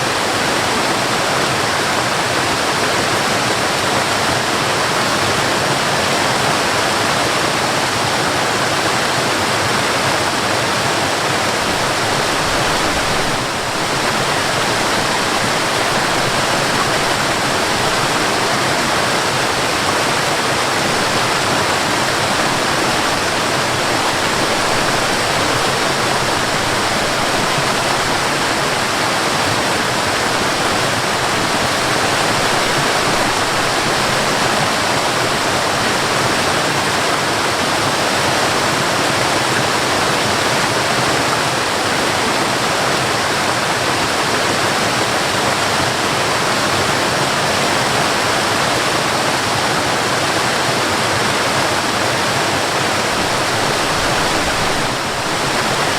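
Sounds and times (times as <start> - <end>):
waterfall rushing: 0.0 - 55.9.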